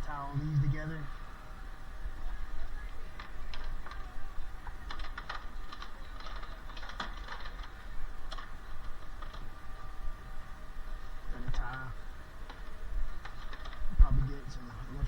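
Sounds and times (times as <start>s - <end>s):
steady low hum: 0.0s - 15.0s
plastic wires clicking and rattling: 2.5s - 10.1s, 10.9s - 15.0s.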